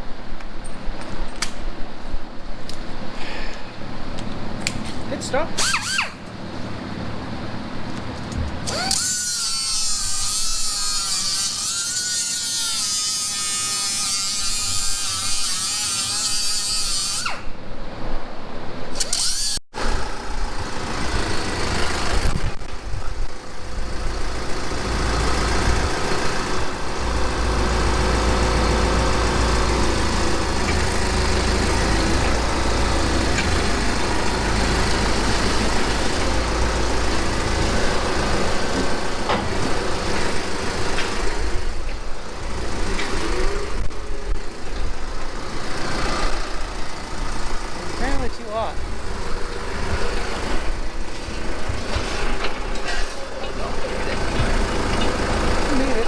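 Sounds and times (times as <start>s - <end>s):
angle grinder whining: 5.6s - 6.3s, 8.6s - 17.5s
low engine rumble: 19.8s - 56.0s.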